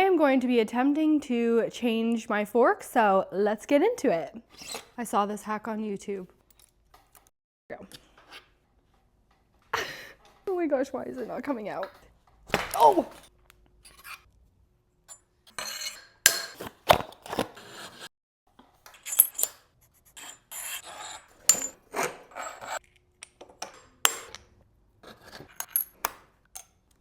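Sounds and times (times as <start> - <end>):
metal parts and tools clinking: 18.8 - 19.7, 21.4 - 21.8, 25.3 - 27.0.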